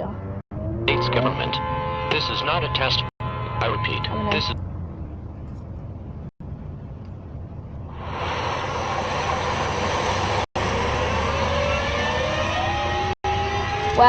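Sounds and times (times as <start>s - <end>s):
sirens wailing: 0.0s - 5.4s, 8.6s - 14.0s
low rumble: 0.0s - 14.0s
loud rushing noise: 7.9s - 13.8s.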